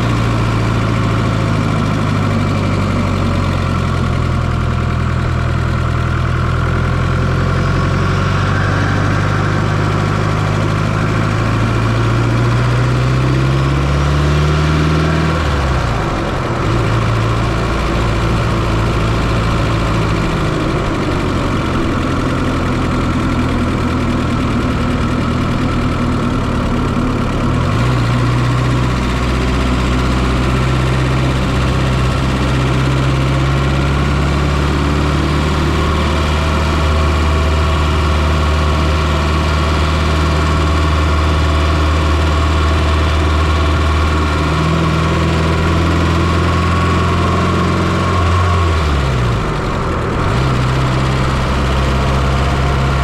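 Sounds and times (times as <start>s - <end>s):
car engine running at low revs: 0.0s - 53.0s.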